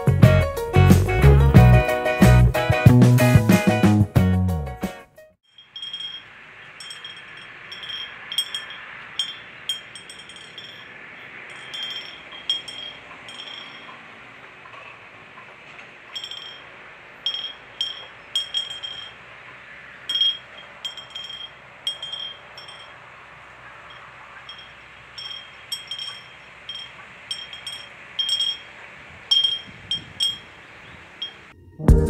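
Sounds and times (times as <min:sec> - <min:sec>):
bell clinking: 0:05.4 - 0:14.9, 0:16.1 - 0:19.3, 0:20.0 - 0:31.6
steady background hiss: 0:05.4 - 0:31.8.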